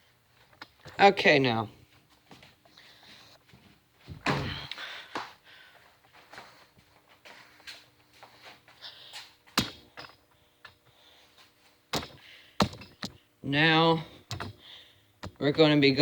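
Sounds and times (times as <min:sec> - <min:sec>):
objects knocking and clicking: 0:11.9 - 0:13.2, 0:14.3 - 0:14.6.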